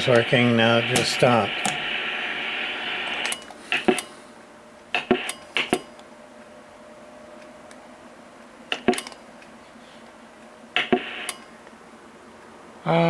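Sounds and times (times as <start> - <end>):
radio switch clicks: 0.0 - 4.1, 8.7 - 9.2, 10.8 - 11.5
receiver static bursts: 0.0 - 4.3, 5.0 - 5.9, 10.8 - 11.6.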